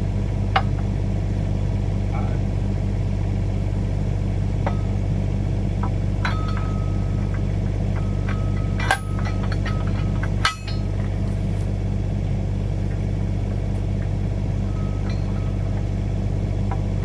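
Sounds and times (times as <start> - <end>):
excavator engine running: 0.0 - 17.0
metallic clank: 5.8 - 11.8, 14.6 - 15.9.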